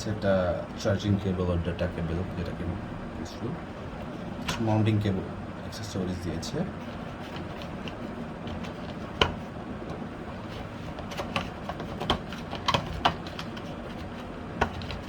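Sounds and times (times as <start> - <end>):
steady low hum: 0.0 - 15.0
plastic accessories clicking and tapping: 7.3 - 15.0.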